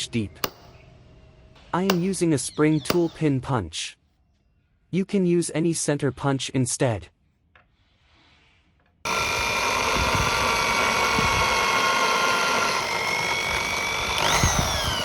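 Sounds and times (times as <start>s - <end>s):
electric drill whining: 9.1s - 15.0s.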